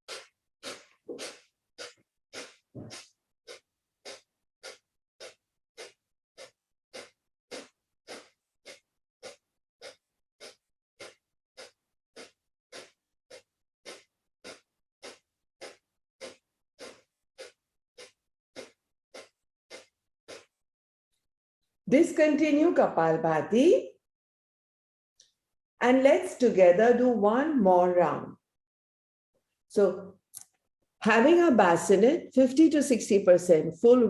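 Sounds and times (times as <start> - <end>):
forceful exhalations through nose: 0.1 - 20.6.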